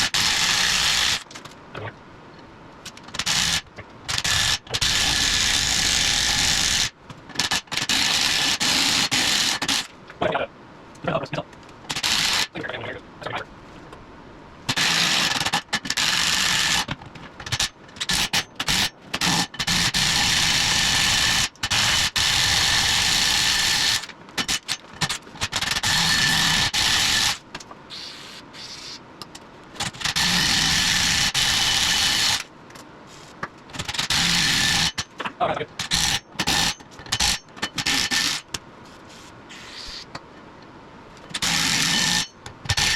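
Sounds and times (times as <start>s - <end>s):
impact wrench bursts: 29.8s - 32.5s, 33.8s - 35.1s, 41.3s - 42.9s.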